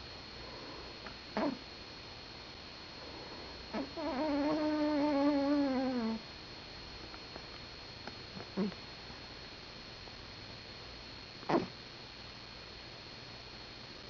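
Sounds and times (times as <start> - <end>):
cat snoring: 3.7 - 6.2.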